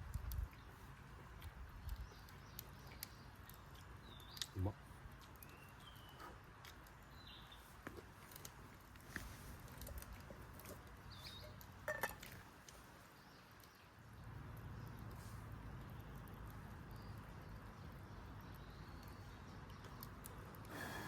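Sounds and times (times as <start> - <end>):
bird chirps: 11.1 - 11.6.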